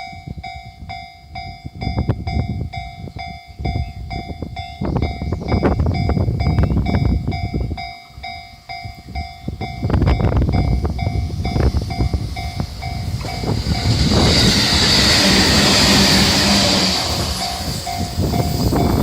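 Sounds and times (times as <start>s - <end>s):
level-crossing warning bell: 0.0s - 19.0s
train rushing noise: 9.1s - 19.0s
train wheels clattering over rail joints: 11.4s - 19.0s.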